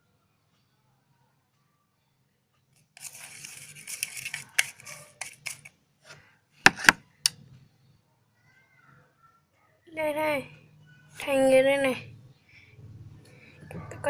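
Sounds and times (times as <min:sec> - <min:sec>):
stirrer scraping slime: 0:02.8 - 0:05.7.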